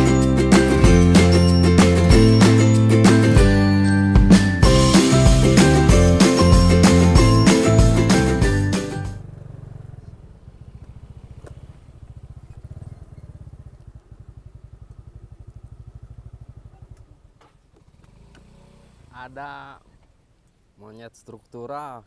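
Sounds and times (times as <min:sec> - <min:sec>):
music: 0:00.0 - 0:09.2
vehicle engine running: 0:00.0 - 0:20.3.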